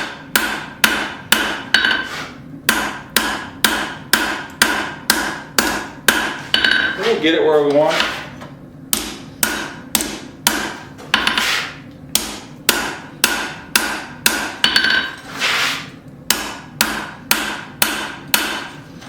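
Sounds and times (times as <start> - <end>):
hammer striking steel on anvil: 0.0 - 2.1, 2.7 - 7.2, 8.9 - 11.5, 12.2 - 15.2, 16.3 - 18.8.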